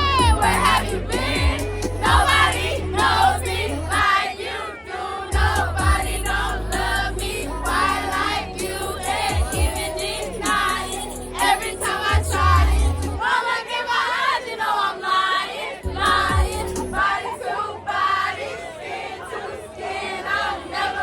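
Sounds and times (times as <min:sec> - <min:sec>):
deep sliding bass: 0:00.0 - 0:04.0, 0:05.3 - 0:13.2, 0:15.8 - 0:17.0
crowd singing along: 0:00.0 - 0:21.0
music with sung vocals: 0:00.0 - 0:21.0.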